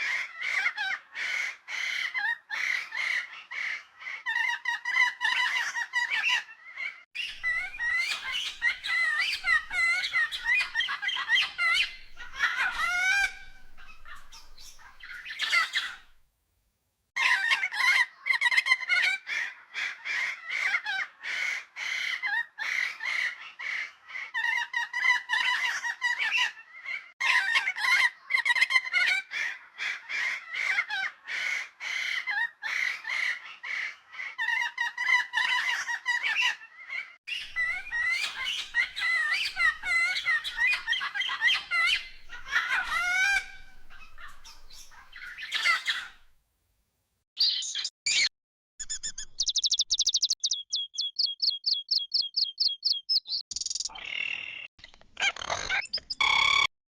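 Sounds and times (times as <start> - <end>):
birds chattering: 7.2 - 16.2, 37.3 - 46.3.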